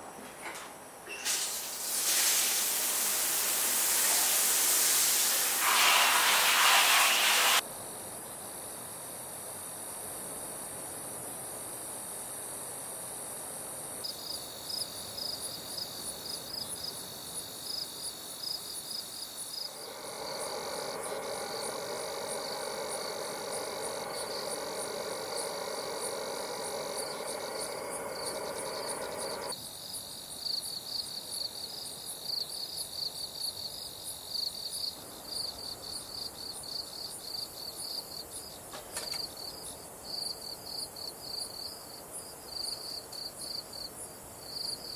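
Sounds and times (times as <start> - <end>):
crickets chirping: 1.2 - 44.9
low steady buzzing: 19.7 - 29.5.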